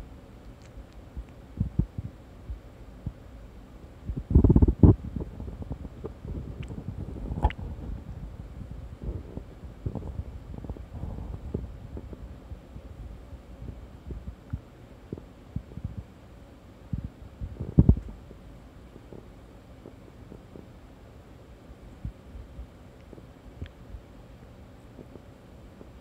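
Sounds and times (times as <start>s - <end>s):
stomach gurgling: 4.1s - 8.1s.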